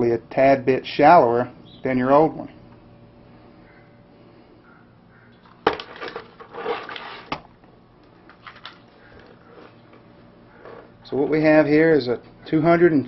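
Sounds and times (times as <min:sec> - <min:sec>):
power supply units handled: 0:05.4 - 0:07.5.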